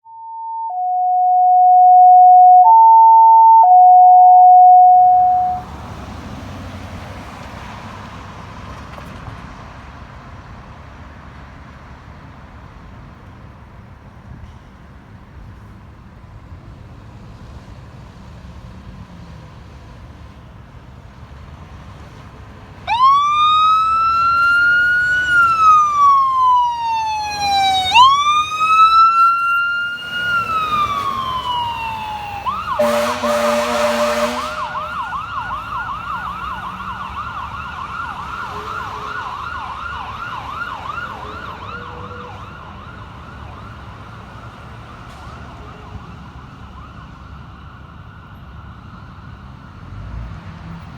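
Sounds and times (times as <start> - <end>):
electronic siren wailing: 0.0 - 5.6, 22.9 - 42.4
road traffic noise: 3.7 - 50.9
air horn blast: 32.7 - 35.0.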